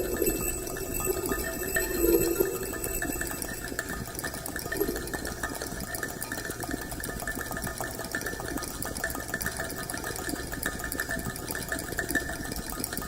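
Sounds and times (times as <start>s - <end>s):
rapid synthesized clicks and crackles: 0.0s - 5.7s.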